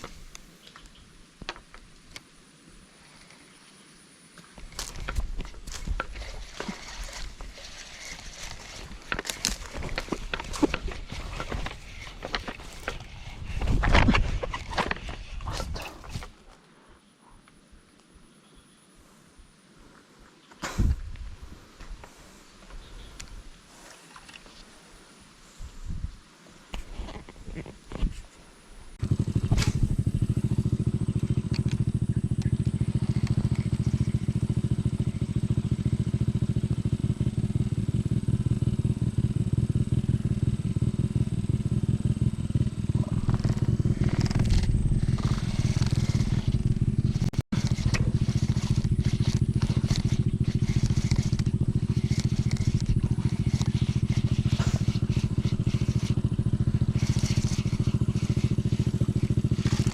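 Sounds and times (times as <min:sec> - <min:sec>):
crackling and scraping noise: 0:00.0 - 0:00.8, 0:04.5 - 0:16.7, 0:29.0 - 0:34.8, 0:42.4 - 0:59.9
small engine running: 0:04.6 - 0:16.3, 0:29.0 - 0:59.9.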